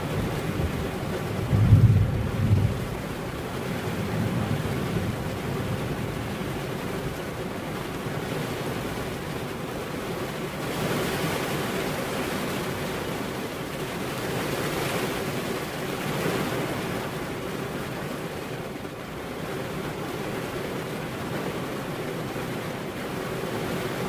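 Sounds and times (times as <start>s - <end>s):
steady rain falling: 0.0s - 24.0s.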